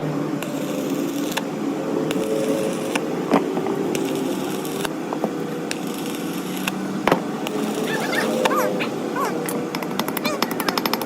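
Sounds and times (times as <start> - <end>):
mechanical drone: 0.0 - 11.0
sharp taps and knocks: 6.6 - 7.7.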